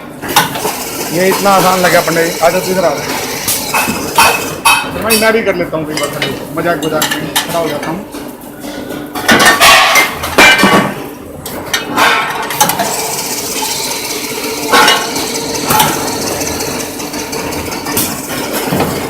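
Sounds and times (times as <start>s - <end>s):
machine hum with held tone: 11.0s - 19.0s.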